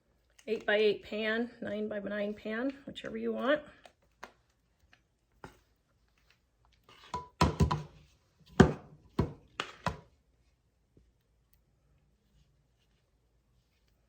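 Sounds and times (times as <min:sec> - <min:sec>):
pans knocking on a counter: 0:07.2 - 0:07.9.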